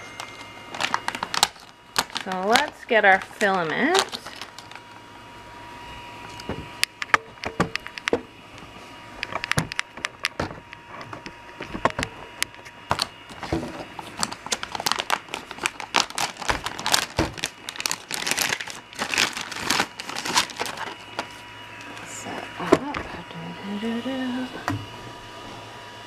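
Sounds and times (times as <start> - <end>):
plastic packaging crinkling: 0.0 - 5.0, 11.6 - 22.1.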